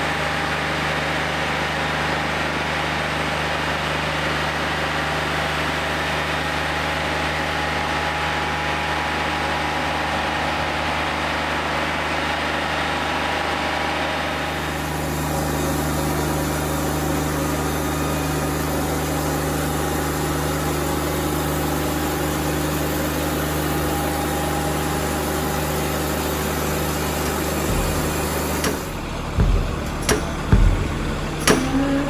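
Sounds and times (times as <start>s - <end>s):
sawmill engine humming: 4.2s - 32.0s
saw blade hissing through wood: 14.5s - 29.2s
sharp knocks: 27.2s - 32.0s.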